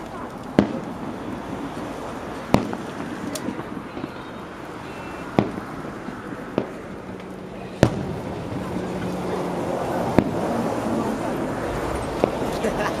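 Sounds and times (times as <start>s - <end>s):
fireworks bangs: 0.0s - 13.0s
steady background noise: 0.0s - 13.0s.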